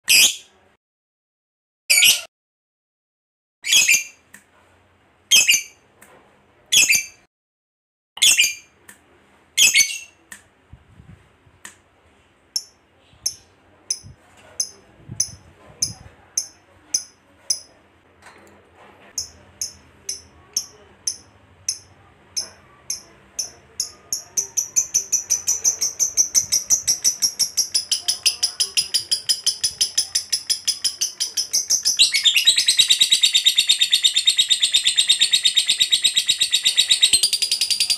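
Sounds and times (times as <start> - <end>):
lovebird chattering trill: 19.2 - 37.9.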